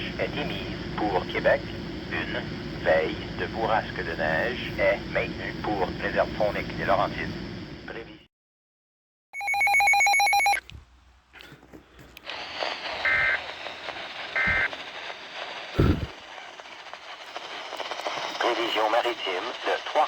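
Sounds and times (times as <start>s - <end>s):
radio static hiss: 0.0s - 8.3s, 12.2s - 20.0s
pulsed electronic alert tone: 9.4s - 10.6s
short beeps: 9.4s - 10.6s.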